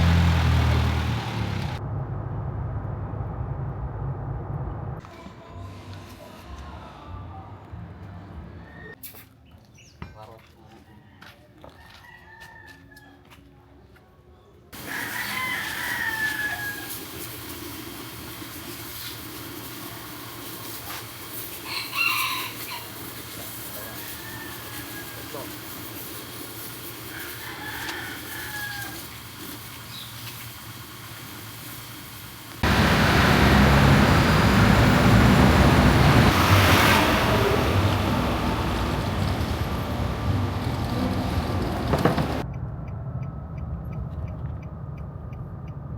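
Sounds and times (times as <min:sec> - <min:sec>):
loud machine running: 0:00.0 - 0:01.8, 0:32.6 - 0:42.4
rooster crowing: 0:10.8 - 0:13.4, 0:14.8 - 0:17.1, 0:21.6 - 0:23.0, 0:23.7 - 0:25.5, 0:27.1 - 0:29.1.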